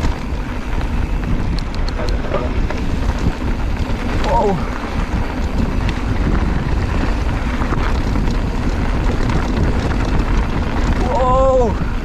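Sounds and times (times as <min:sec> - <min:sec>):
bike tyres rumbling on trail: 0:00.0 - 0:12.0
wind buffeting microphone: 0:00.0 - 0:12.0.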